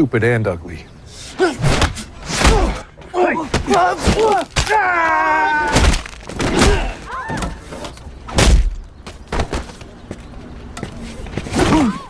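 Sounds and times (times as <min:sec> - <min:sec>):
punch impacts: 0:01.4 - 0:02.8, 0:03.5 - 0:04.9, 0:05.6 - 0:07.1, 0:08.3 - 0:09.7.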